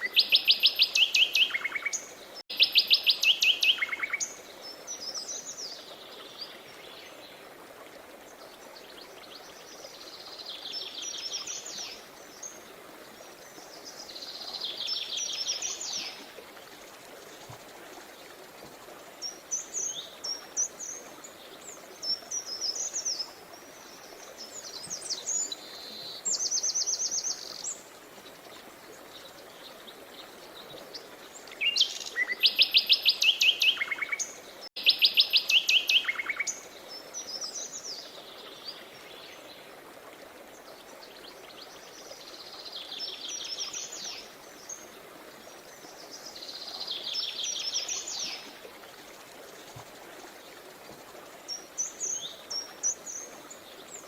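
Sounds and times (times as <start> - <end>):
songbirds trilling and chirping: 8.2 - 39.8.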